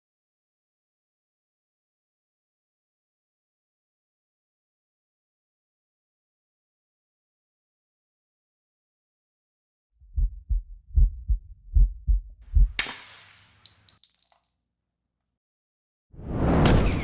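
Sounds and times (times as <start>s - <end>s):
heartbeat thumps: 10.0s - 12.8s.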